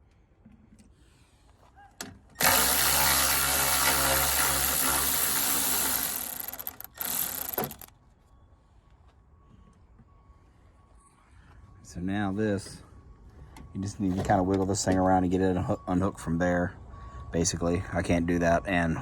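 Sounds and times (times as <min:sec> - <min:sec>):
power tool motor running: 0:02.4 - 0:07.9.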